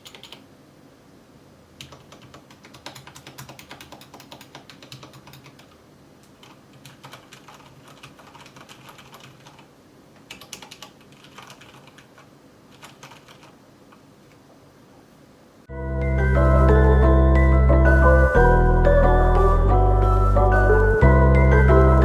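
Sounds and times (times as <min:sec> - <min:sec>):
mechanical keyboard typing: 0:00.0 - 0:00.4, 0:01.8 - 0:14.0.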